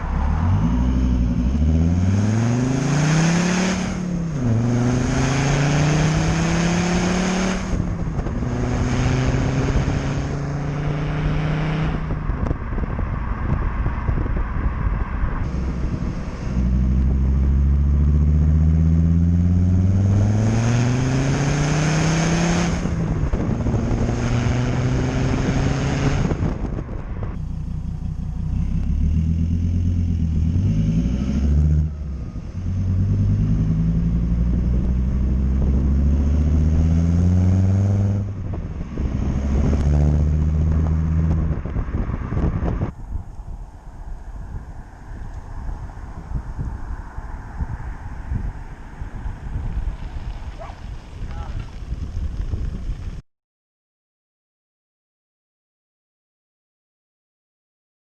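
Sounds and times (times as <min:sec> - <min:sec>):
diesel car engine accelerating: 0:00.0 - 0:53.2.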